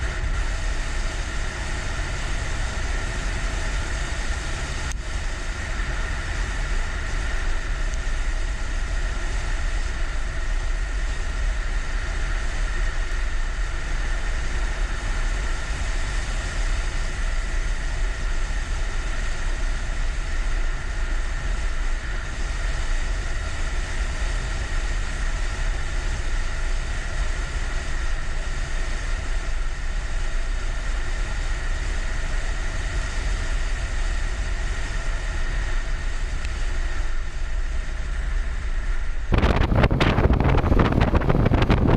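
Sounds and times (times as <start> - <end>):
motorcycle engine running: 0.0 - 41.9
wind buffeting the microphone: 0.0 - 41.9.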